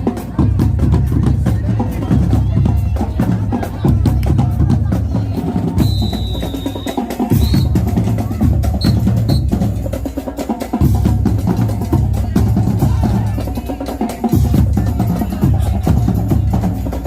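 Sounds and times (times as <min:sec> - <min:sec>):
marching band playing: 0:00.0 - 0:17.0.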